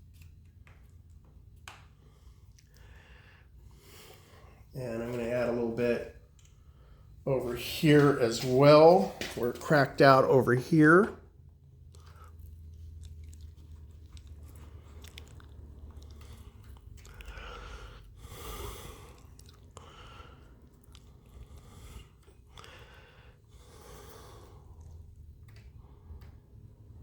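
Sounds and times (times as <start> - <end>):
hands clicking and scraping: 0.0 - 2.9
low steady hum: 0.0 - 27.0
breaths near microphone: 2.0 - 4.7, 6.5 - 9.5, 16.0 - 27.0.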